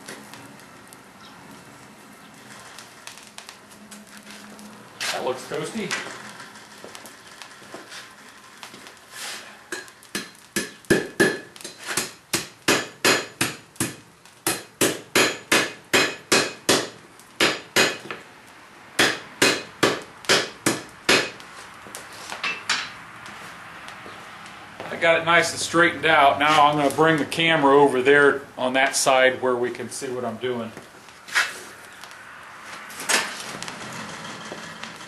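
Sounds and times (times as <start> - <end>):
hammer striking steel on anvil: 9.7 - 18.1, 19.0 - 21.4.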